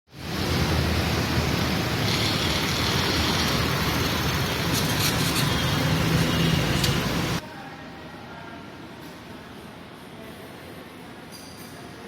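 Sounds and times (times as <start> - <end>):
busy road traffic: 0.1 - 7.4.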